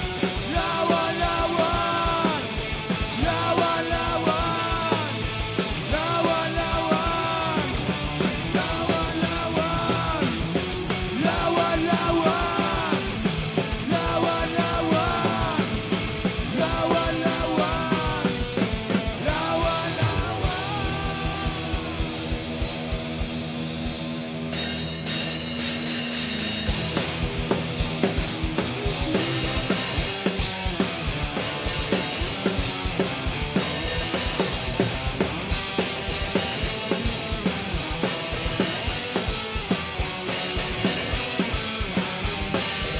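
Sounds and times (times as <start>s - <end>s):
drum kit: 0.0s - 42.9s
melodic guitar lead line: 0.0s - 42.9s
rock band playing: 0.0s - 42.9s.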